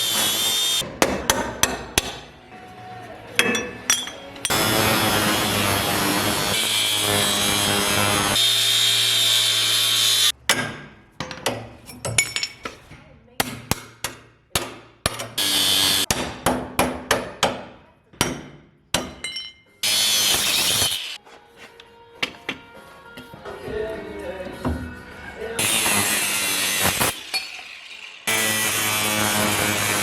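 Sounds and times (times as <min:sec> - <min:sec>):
power tool running: 0:00.0 - 0:00.8, 0:04.5 - 0:10.3, 0:15.4 - 0:16.1, 0:25.6 - 0:30.0
hammer strikes on metal: 0:00.9 - 0:02.3, 0:10.4 - 0:11.6, 0:13.4 - 0:15.4, 0:16.1 - 0:19.4.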